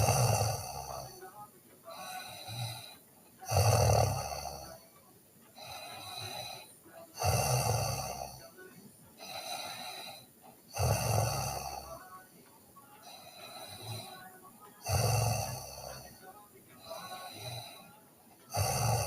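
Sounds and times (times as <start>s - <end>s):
person snoring: 0.0s - 1.3s, 1.9s - 4.9s, 5.6s - 8.6s, 9.2s - 12.2s, 13.0s - 19.0s
soft breaths out: 5.6s - 6.9s.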